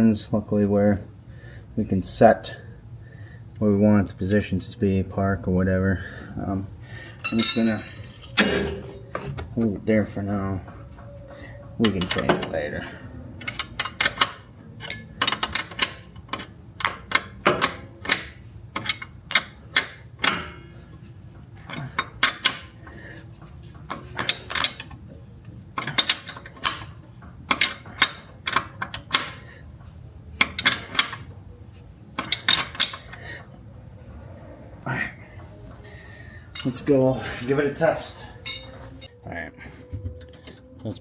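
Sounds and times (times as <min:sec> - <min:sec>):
tools and metal parts clinking: 0:07.2 - 0:09.4, 0:13.4 - 0:20.8, 0:21.7 - 0:23.0, 0:23.9 - 0:25.0, 0:25.8 - 0:29.4, 0:30.4 - 0:31.3, 0:32.2 - 0:33.2, 0:38.4 - 0:39.1.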